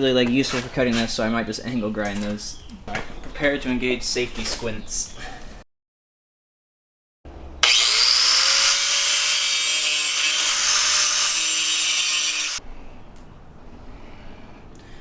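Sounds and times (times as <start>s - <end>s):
angle grinder grinding metal: 7.6s - 12.6s.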